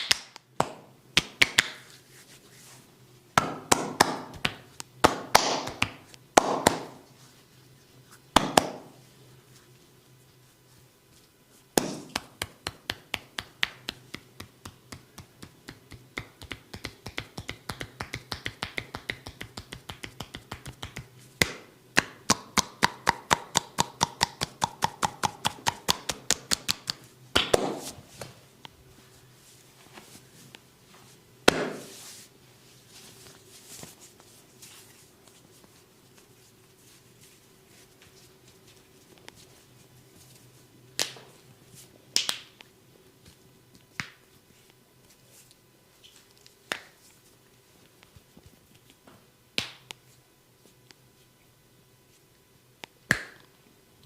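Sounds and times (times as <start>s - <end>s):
hands striking skin: 8.4s - 8.9s, 53.1s - 53.4s
faint handling sounds: 27.8s - 40.7s.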